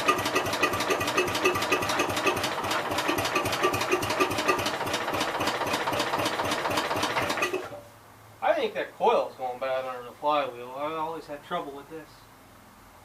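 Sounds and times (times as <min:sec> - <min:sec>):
small engine running: 0:00.0 - 0:07.8.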